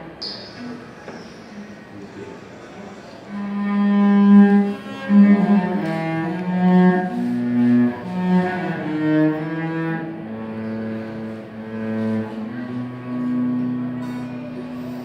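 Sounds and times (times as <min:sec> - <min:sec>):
solo cello bowed melody: 0:03.3 - 0:15.0.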